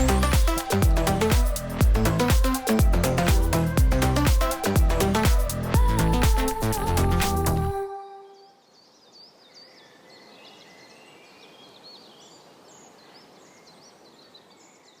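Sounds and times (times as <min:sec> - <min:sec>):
faint background hiss: 0:07.8 - 0:15.0.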